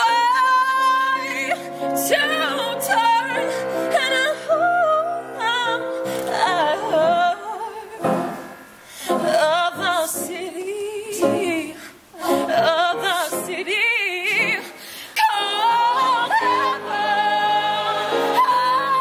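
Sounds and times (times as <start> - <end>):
woman singing with vibrato: 0.0 - 19.0
singer breathing: 8.4 - 9.2, 14.6 - 15.2.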